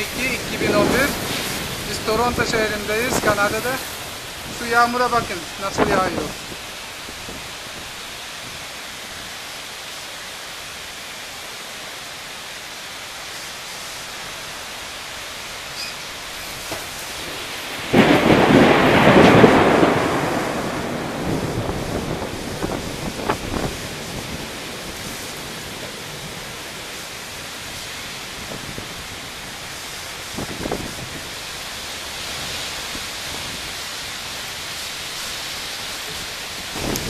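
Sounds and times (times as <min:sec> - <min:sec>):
thunderclap rumbling: 0:00.0 - 0:08.0, 0:16.2 - 0:27.0, 0:27.6 - 0:34.4, 0:36.1 - 0:37.0
heavy rain: 0:00.0 - 0:37.0.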